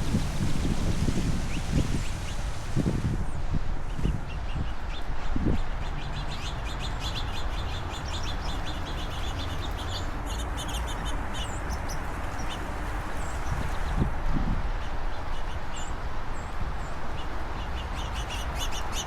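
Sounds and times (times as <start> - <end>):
small songbirds chirping: 4.0 - 14.1, 14.8 - 19.0.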